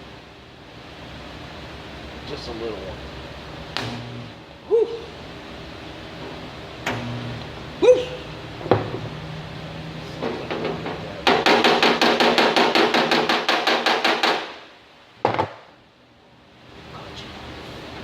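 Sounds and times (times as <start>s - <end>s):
hammer striking sheet steel: 11.2s - 14.6s.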